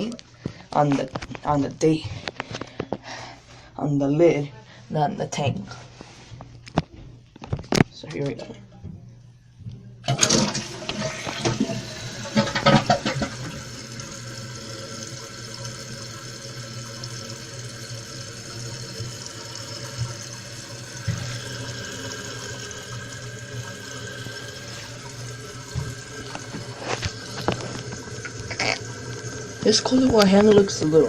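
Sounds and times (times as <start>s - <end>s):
toilet flushing: 10.1s - 31.0s.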